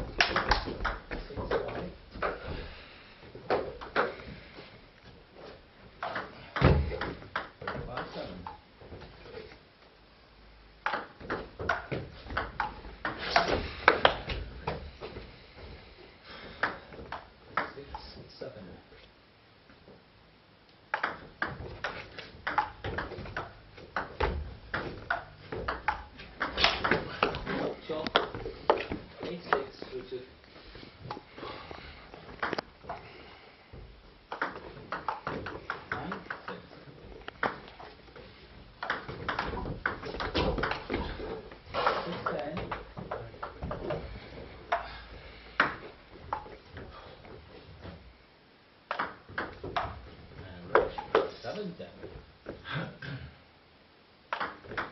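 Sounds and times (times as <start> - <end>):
table tennis ball hits: 0.1 - 2.4, 6.0 - 8.6, 10.8 - 14.8, 20.9 - 27.5, 32.4 - 33.0, 34.3 - 36.6, 38.8 - 41.1, 45.6 - 46.9, 48.9 - 50.0, 54.3 - 54.9.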